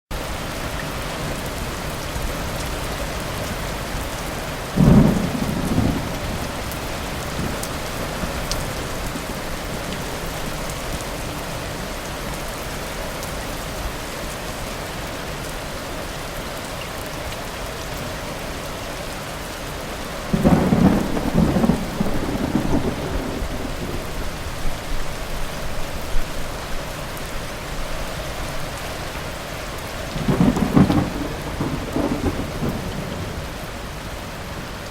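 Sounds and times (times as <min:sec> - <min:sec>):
steady rain falling: 0:00.1 - 0:34.9
crackling roll of thunder: 0:04.6 - 0:11.0, 0:20.2 - 0:26.4, 0:30.1 - 0:34.8
sharp thunder crack: 0:20.3 - 0:24.2.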